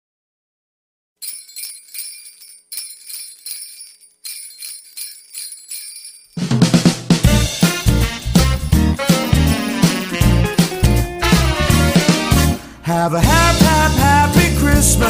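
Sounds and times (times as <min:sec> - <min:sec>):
sleigh bells shaken: 0:01.2 - 0:06.8
christmas song with heavy bass: 0:07.2 - 0:15.0.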